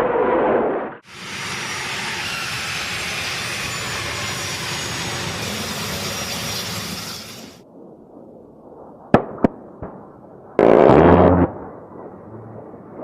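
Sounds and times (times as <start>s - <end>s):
jet rushing and hissing: 1.0s - 7.6s.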